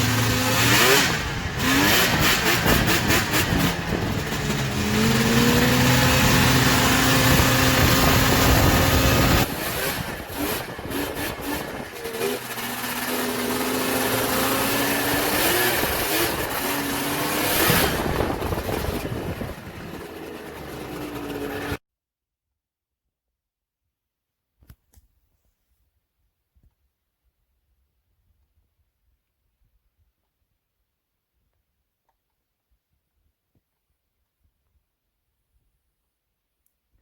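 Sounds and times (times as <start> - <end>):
snowmobile engine revving: 0.0 - 21.8.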